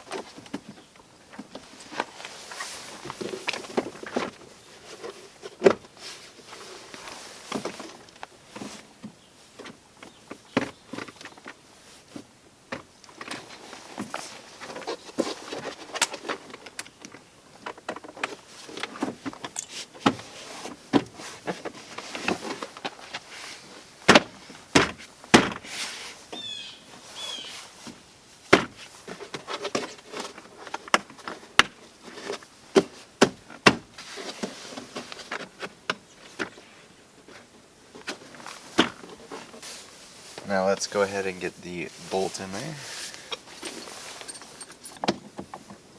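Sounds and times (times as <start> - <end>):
hand tools clicking and knocking: 42.2 - 45.6.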